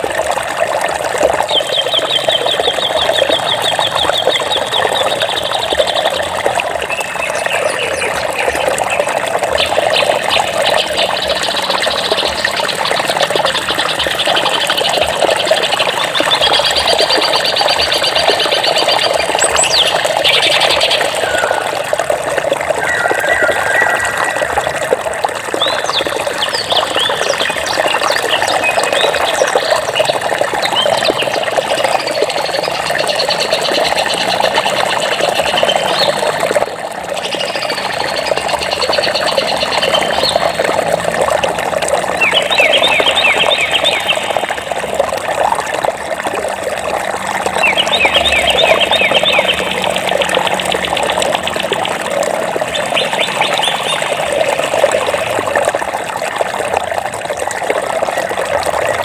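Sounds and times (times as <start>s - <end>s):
running water rushing: 0.0s - 59.0s
songbirds chirping: 1.4s - 36.3s, 47.5s - 51.2s.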